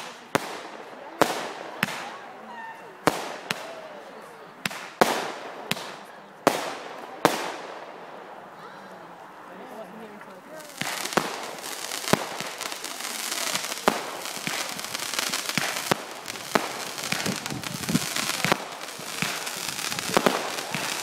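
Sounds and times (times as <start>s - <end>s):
fireworks crackling fizz: 0.0s - 2.3s, 4.6s - 7.9s, 9.8s - 21.0s
fireworks bangs: 0.0s - 4.0s, 4.6s - 8.4s, 10.2s - 21.0s.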